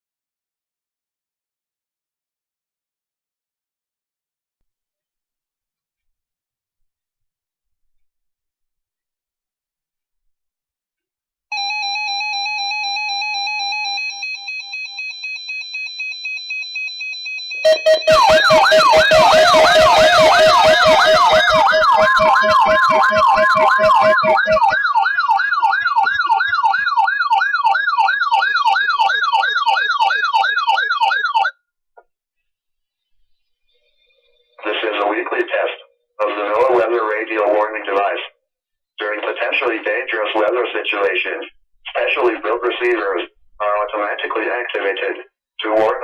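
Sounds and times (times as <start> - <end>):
steady alarm tone: 11.5 - 31.5
pulsing alarm tone: 11.6 - 31.5
fast yelp siren: 17.5 - 31.5.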